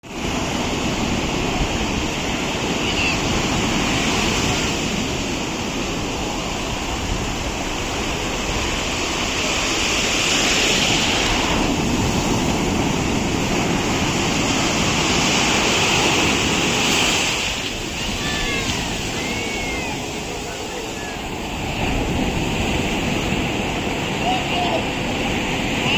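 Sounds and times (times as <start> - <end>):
surf breaking on shore: 0.0 - 25.9.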